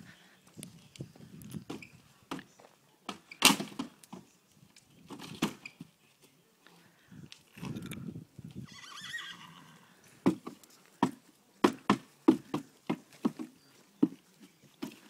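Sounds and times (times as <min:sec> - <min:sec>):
hooves clip-clopping: 0:07.3 - 0:15.0
horse whinnying: 0:08.6 - 0:10.0.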